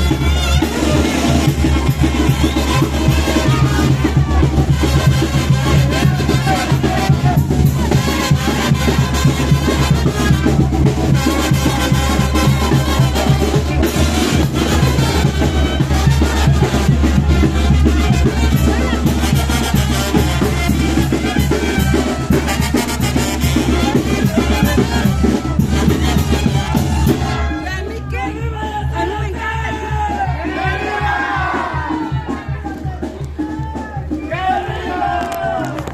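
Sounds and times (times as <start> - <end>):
trumpets: 0.0 - 28.2
brass band playing dance music: 0.0 - 35.9
steady drum beat: 0.0 - 35.9.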